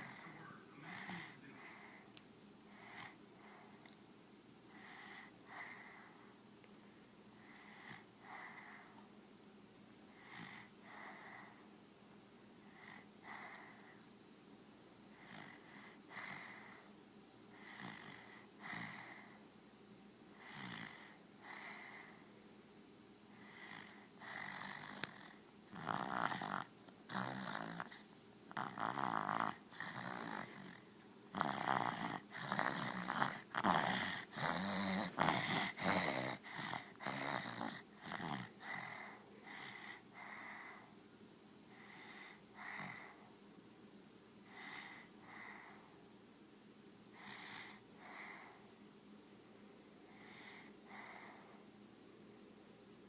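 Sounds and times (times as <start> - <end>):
short rasping snores: 23.5 - 28.0, 28.6 - 30.8, 31.4 - 39.0.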